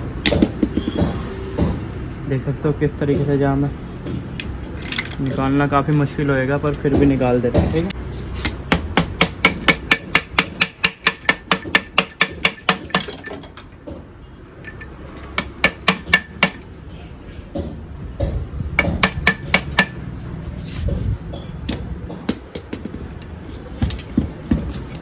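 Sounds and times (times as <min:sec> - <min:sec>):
hammer striking metal: 0:06.7 - 0:13.3, 0:14.7 - 0:16.6, 0:18.8 - 0:20.0.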